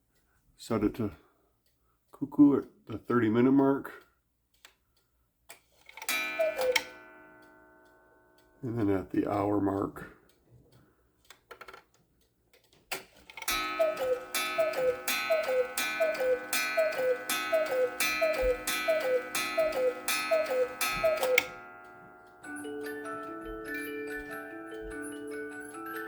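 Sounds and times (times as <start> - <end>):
clock mechanism clicks: 1.6 - 23.4
two-note cuckoo calls: 6.3 - 7.0, 13.5 - 21.7.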